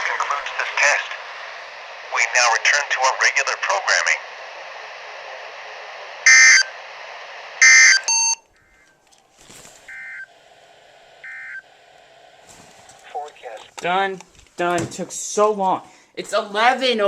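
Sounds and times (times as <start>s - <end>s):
radio static: 0.0s - 8.9s, 9.5s - 14.2s.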